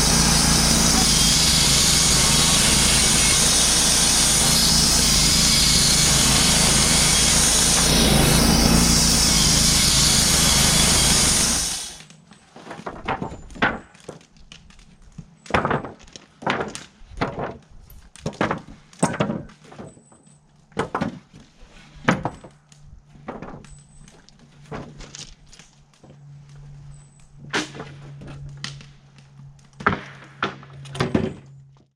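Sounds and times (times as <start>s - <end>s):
sawmill running: 0.0s - 12.1s
wooden knocks and clunks: 12.6s - 14.3s, 15.4s - 22.6s, 23.2s - 25.1s, 29.8s - 31.8s.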